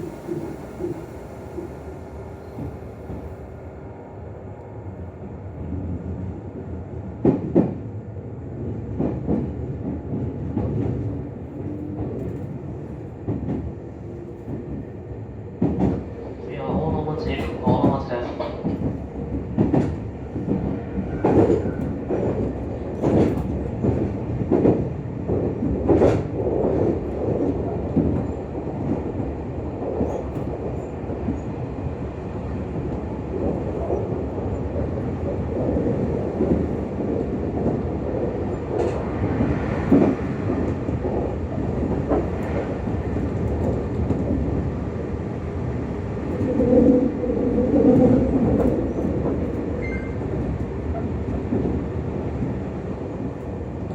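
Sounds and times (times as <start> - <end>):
rumble of wheels on rail: 0.0 - 53.9
rail-joint clacks: 17.0 - 29.0, 47.7 - 51.8.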